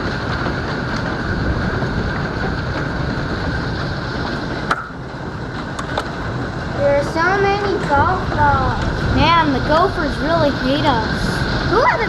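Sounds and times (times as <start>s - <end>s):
hail falling hard: 0.0s - 12.0s
sharp crack: 3.8s - 6.2s.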